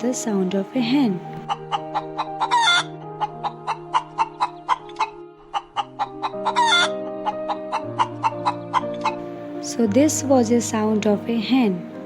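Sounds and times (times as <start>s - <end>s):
background music with ticking beat: 1.2s - 9.2s
hen clucking: 1.4s - 9.2s.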